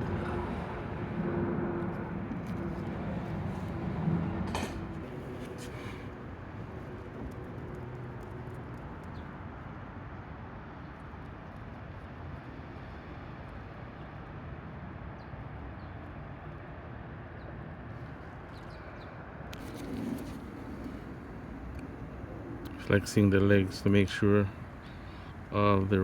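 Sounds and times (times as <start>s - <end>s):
low hum and hiss: 19.7s - 26.0s.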